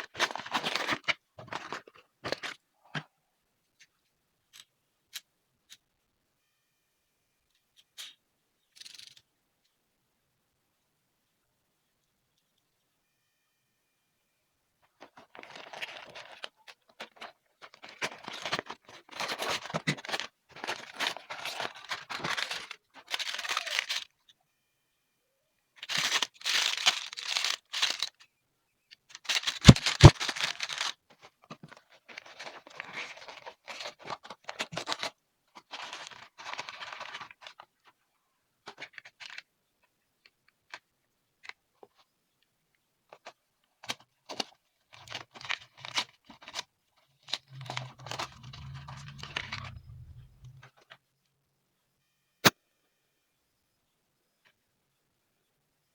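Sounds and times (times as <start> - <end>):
packaging torn and crinkled: 25.9 - 28.1, 29.3 - 31.0.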